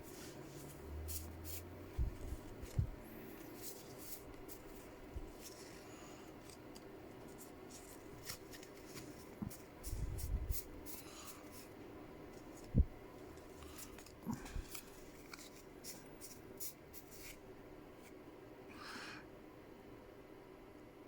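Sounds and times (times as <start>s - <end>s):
soft low thumps: 1.9s - 3.1s, 12.7s - 13.0s
cards flicking and sliding: 6.4s - 11.1s.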